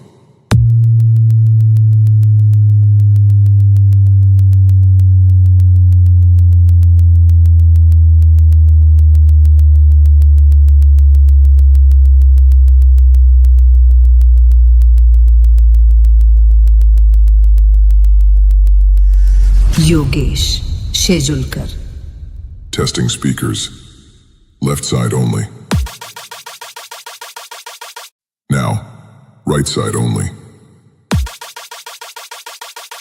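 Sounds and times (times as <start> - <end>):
fast even ticking: 25.7 - 28.1, 31.1 - 33.0.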